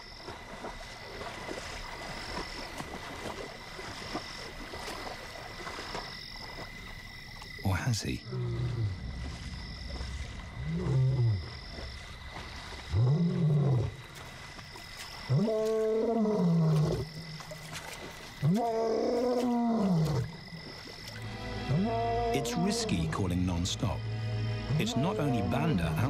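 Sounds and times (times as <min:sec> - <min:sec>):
lion roaring: 0:10.6 - 0:11.5, 0:12.9 - 0:14.0.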